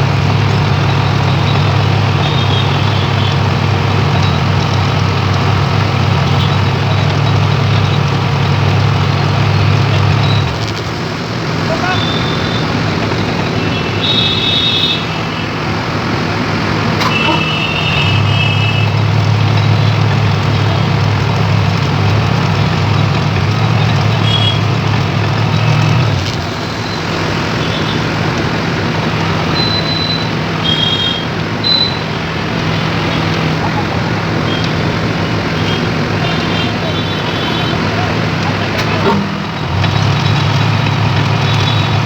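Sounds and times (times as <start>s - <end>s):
diesel engine running: 0.0s - 42.0s
vibratory pile driver: 15.8s - 42.0s.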